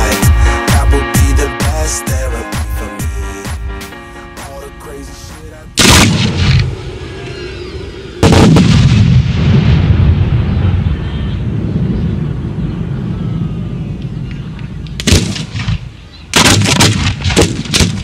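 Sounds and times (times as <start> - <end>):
low rumbling echo: 5.8 - 16.0
fireworks bangs: 8.2 - 11.6.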